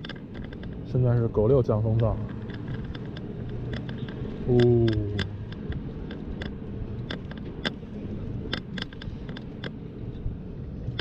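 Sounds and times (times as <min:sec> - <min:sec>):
sharp clicks and knocks: 0:00.0 - 0:09.8
low rumble of wind and road: 0:00.0 - 0:11.0.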